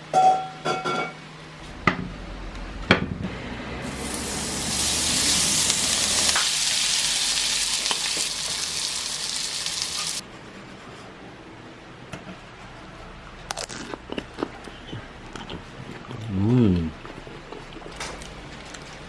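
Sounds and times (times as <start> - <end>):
tofu sizzling on hot metal: 3.8 - 10.2.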